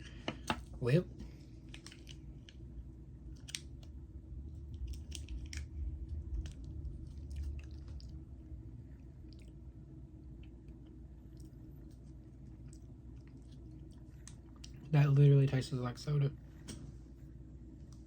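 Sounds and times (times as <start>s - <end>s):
person chewing gummy candy: 4.5s - 8.2s.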